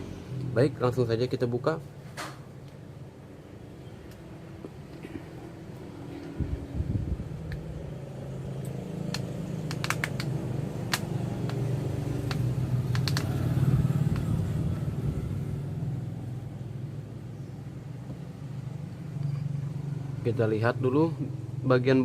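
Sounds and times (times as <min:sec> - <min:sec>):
low engine hum: 0:04.2 - 0:20.4
smartphone being pried apart: 0:09.1 - 0:11.6, 0:12.2 - 0:13.4.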